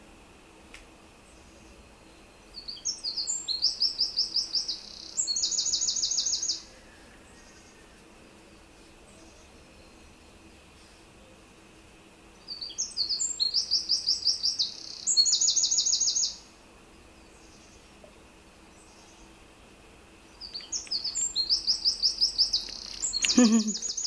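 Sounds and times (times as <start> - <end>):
songbird trilling: 20.4 - 24.0.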